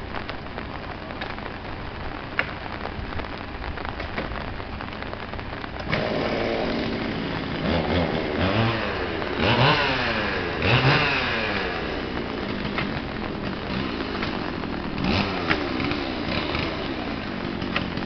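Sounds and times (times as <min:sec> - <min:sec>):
steady rain: 0:00.0 - 0:18.0
chainsaw revving: 0:05.8 - 0:18.0.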